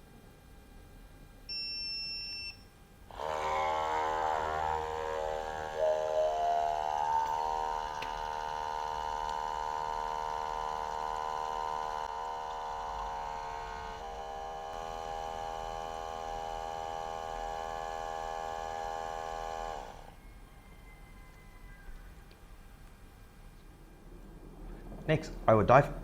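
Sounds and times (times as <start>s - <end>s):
espresso machine pump whining: 3.1s - 20.2s.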